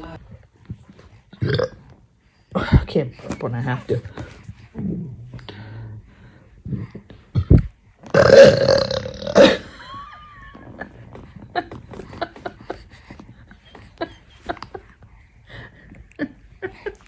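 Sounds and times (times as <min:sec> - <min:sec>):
woman burping loudly: 0:01.4 - 0:01.8, 0:08.1 - 0:09.9.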